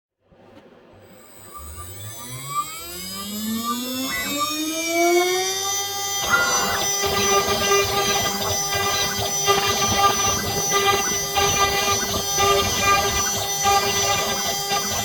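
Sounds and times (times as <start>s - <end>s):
router spindle whine: 1.0s - 15.0s.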